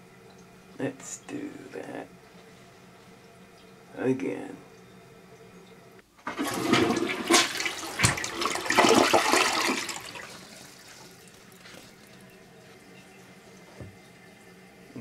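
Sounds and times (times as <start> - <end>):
toilet flushing: 4.8 - 15.0.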